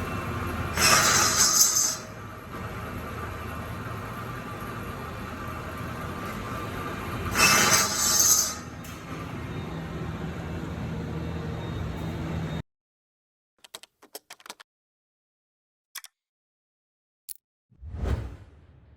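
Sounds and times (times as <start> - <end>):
lathe mechanical hum: 0.0 - 12.6.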